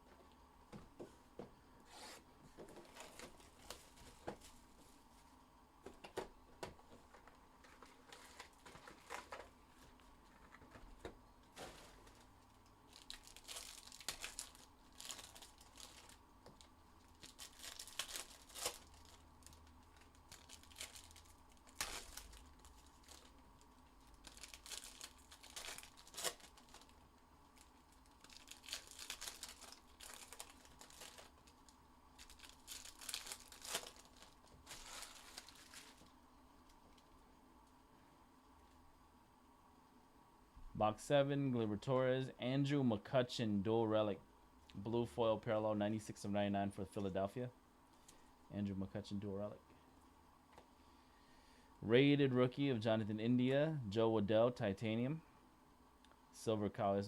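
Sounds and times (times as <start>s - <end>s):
plastic wrapping tearing and crinkling: 12.9s - 37.1s.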